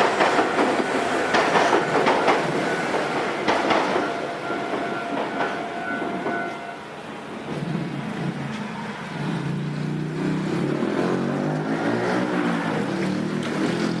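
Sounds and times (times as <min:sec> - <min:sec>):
traffic noise: 0:00.0 - 0:14.0
vehicle engines accelerating: 0:07.6 - 0:14.0.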